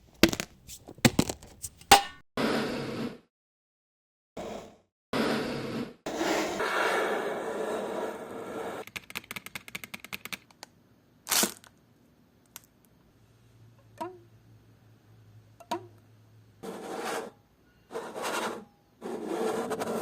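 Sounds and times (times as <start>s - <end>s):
fast run of clicks: 8.8s - 10.6s
rasping scraping noise: 16.6s - 20.0s.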